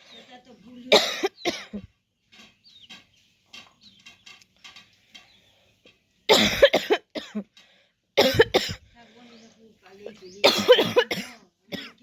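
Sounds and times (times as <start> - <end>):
woman coughing: 0.9 - 1.9, 6.3 - 7.4, 8.2 - 8.9, 10.4 - 12.0.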